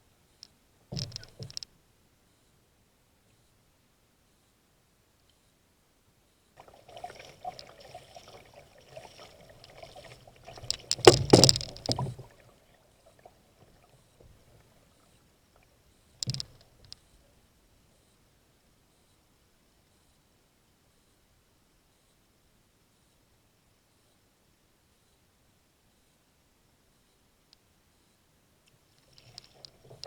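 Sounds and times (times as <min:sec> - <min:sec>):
water splashing against kayak: 0:06.6 - 0:15.1
knocks on kayak: 0:11.0 - 0:12.1.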